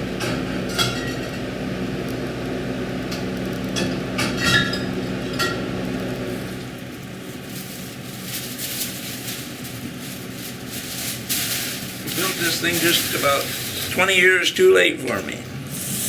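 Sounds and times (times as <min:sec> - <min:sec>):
steady low hum: 0:00.0 - 0:16.0.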